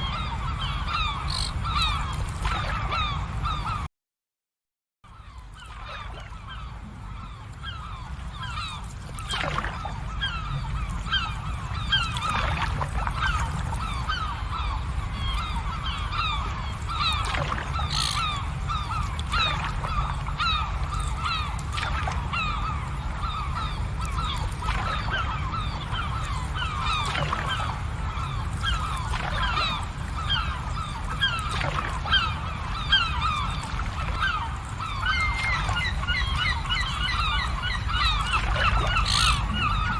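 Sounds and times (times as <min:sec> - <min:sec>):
low steady rumble: 0:05.1 - 0:39.9
flock of birds honking: 0:22.4 - 0:39.9.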